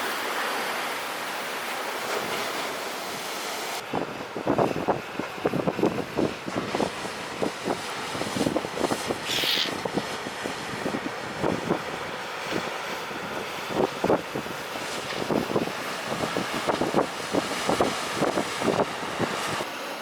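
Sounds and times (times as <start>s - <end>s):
surf rushing: 0.0s - 20.0s
wind buffeting microphone: 3.8s - 19.7s.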